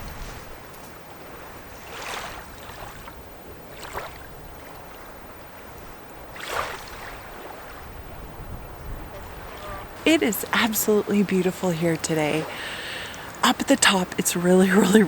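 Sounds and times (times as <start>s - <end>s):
waves lapping shore: 0.0s - 15.0s.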